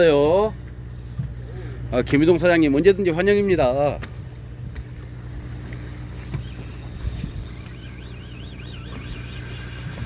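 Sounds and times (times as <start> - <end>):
boat engine droning: 0.0 - 10.0
faint warbling high tone: 7.2 - 10.0.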